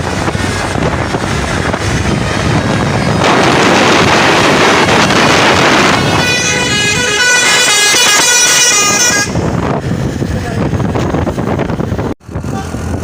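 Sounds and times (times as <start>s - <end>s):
loud rushing noise: 0.0s - 13.0s
bus horn playing a tune: 5.6s - 9.6s.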